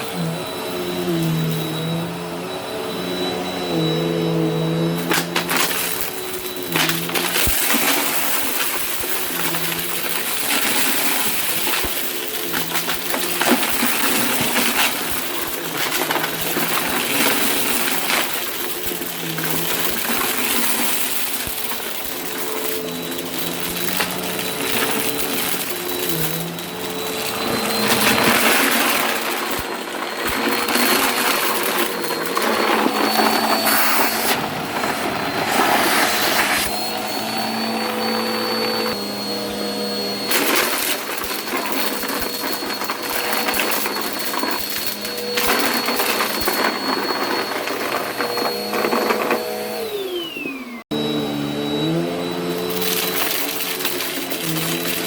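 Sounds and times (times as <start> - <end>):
vacuum sucking up crunchy debris: 0.0 - 50.1, 50.9 - 55.0
vacuum cleaner running: 0.0 - 55.0.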